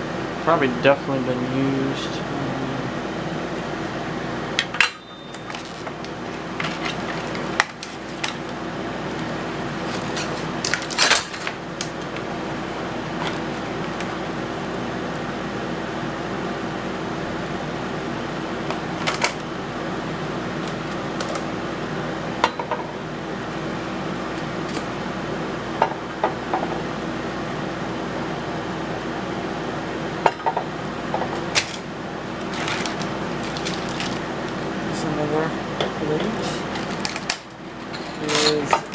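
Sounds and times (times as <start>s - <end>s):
steady fan hum: 0.0s - 38.9s
metal lock parts clinking: 37.9s - 38.9s.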